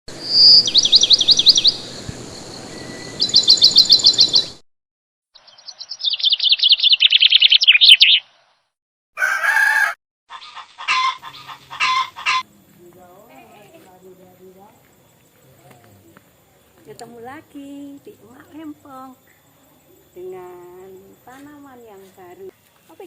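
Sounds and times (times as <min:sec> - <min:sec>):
bird chirping trills: 0:00.2 - 0:04.6, 0:05.4 - 0:08.4
harsh bird call: 0:05.4 - 0:08.4.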